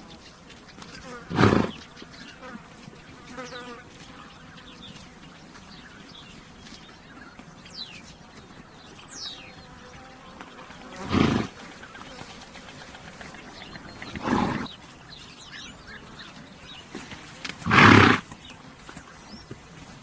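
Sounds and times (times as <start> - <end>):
flies buzzing: 0.0 - 6.3, 7.3 - 19.2
horse snorting: 1.0 - 1.9, 10.9 - 14.8, 16.9 - 18.4.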